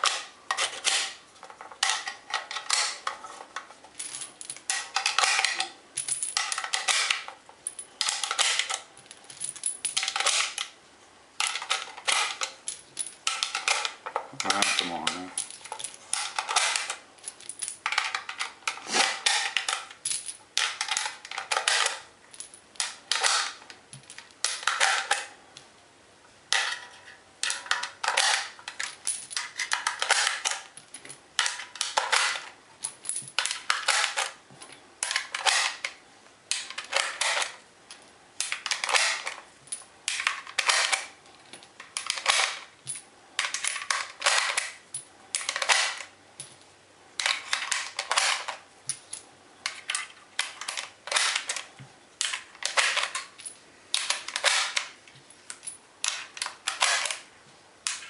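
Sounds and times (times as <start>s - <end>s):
cartridges clicking into magazine: 22.8s - 23.7s, 33.3s - 34.4s, 38.4s - 39.4s, 40.1s - 41.1s, 43.4s - 46.1s, 49.7s - 57.3s.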